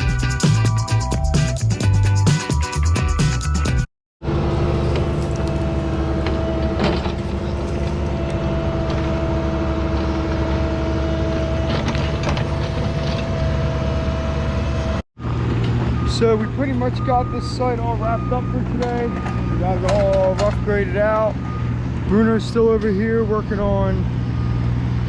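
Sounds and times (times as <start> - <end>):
diesel engine running: 4.2 - 16.1.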